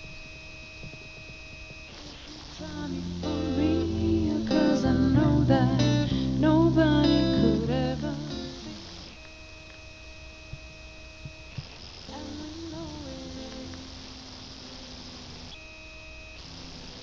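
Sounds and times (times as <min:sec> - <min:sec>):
faint steady hum: 0:00.0 - 0:17.0
guitar music with singing: 0:01.9 - 0:09.2, 0:12.1 - 0:15.5.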